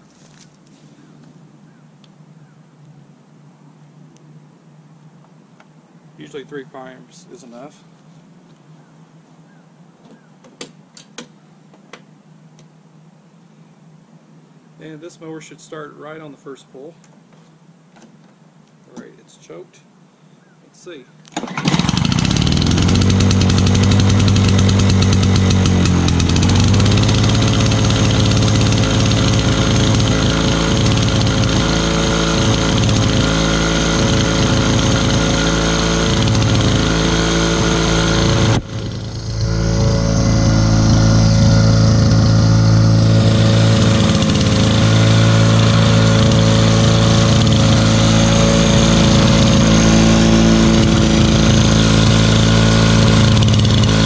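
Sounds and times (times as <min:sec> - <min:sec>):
lawn mower engine running: 0:21.3 - 0:54.0.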